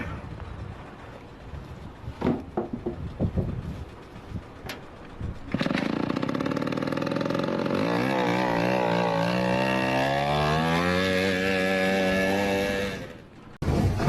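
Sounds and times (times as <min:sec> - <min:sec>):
motor engine running: 0:00.0 - 0:14.0.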